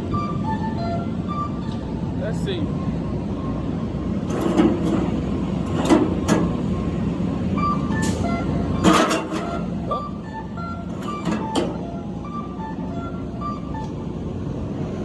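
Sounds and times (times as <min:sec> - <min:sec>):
truck engine running: 0:03.4 - 0:15.0.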